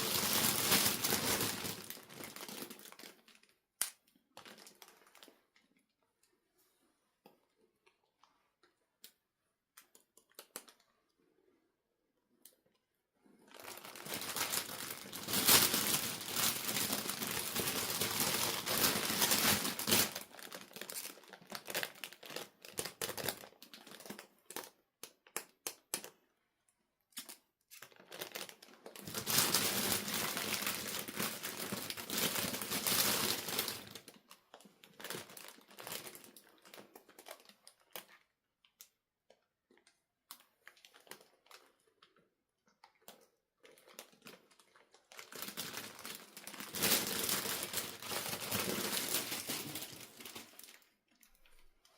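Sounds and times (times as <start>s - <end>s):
packaging crinkling: 0.0s - 3.5s, 4.3s - 5.4s, 13.4s - 24.7s, 27.2s - 38.2s, 43.1s - 51.7s.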